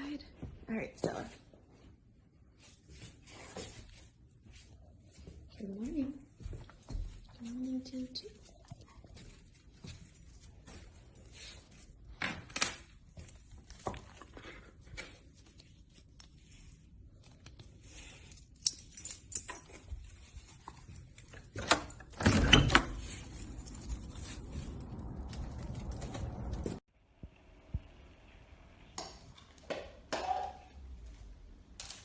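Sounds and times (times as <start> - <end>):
small metal pieces jingling: 23.0 - 26.7.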